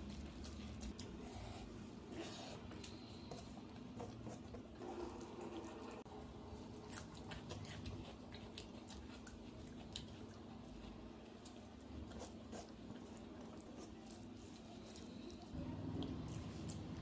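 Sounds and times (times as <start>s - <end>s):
wet chewing and mouth smacks: 6.8s - 17.0s.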